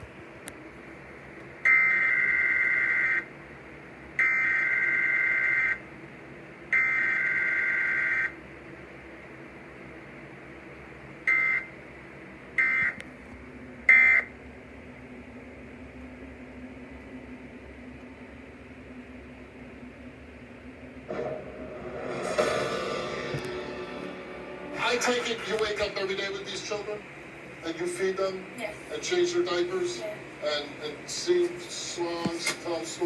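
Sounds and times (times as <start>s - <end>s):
broadcast hiss: 10.1s - 14.4s, 21.1s - 33.0s.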